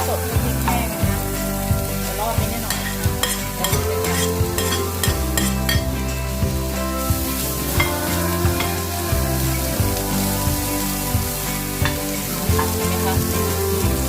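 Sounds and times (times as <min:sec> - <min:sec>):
background music: 0:00.0 - 0:14.0
food sizzling: 0:00.0 - 0:14.0
spatula scraping a pan: 0:02.7 - 0:05.9.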